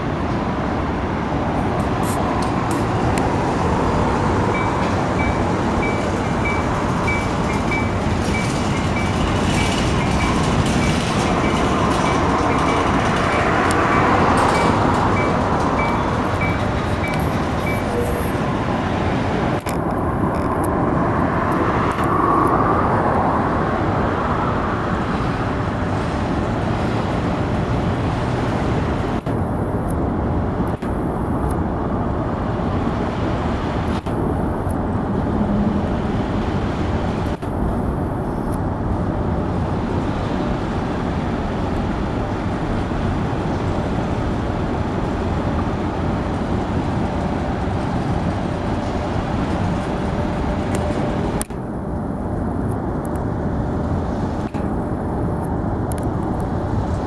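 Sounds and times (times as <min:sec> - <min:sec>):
freight train rolling on rails: 0:00.0 - 0:57.0.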